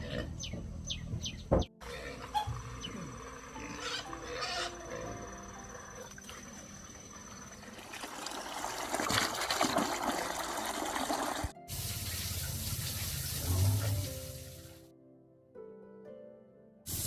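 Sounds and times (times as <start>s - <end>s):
faint background music: 1.7s - 7.6s
running water gushing: 6.1s - 14.8s.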